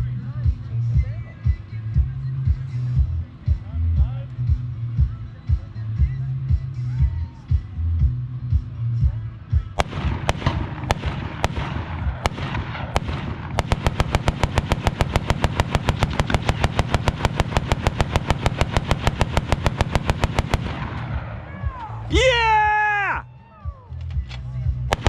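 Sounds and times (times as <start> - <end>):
steady low rumble: 0.0 - 22.2, 23.6 - 25.0
machine gun firing: 9.8 - 21.6.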